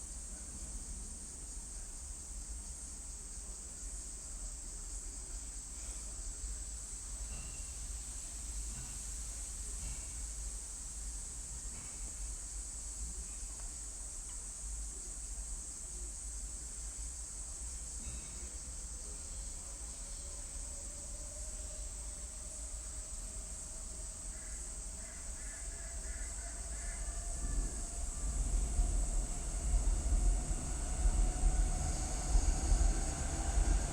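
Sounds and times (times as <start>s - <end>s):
crickets chirping: 0.0s - 33.9s
low outdoor rumble: 19.6s - 33.9s
distant engine hum: 20.4s - 33.9s.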